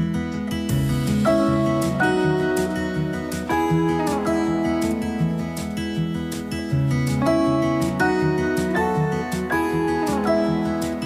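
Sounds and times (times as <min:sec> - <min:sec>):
strummed acoustic guitar music: 0:00.0 - 0:11.0.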